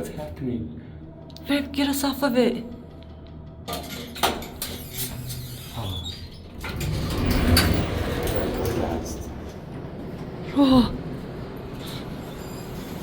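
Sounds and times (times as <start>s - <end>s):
elevator rattling rumble: 3.6s - 13.0s.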